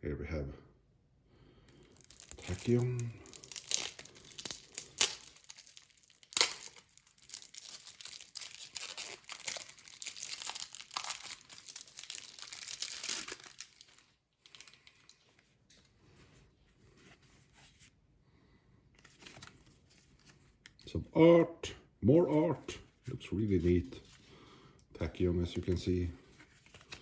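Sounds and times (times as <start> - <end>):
plastic packaging crinkling and tearing: 1.9 - 15.5, 26.4 - 27.0.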